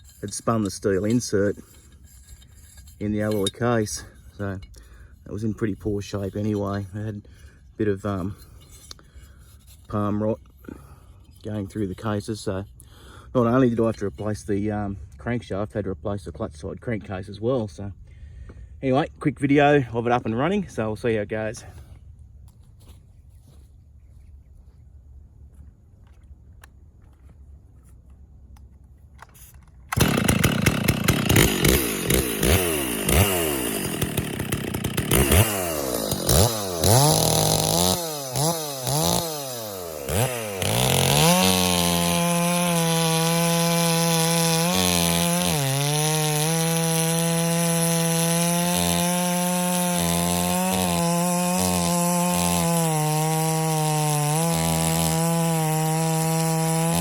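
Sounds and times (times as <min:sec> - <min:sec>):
chainsaw engine revving: 0:29.9 - 0:57.0.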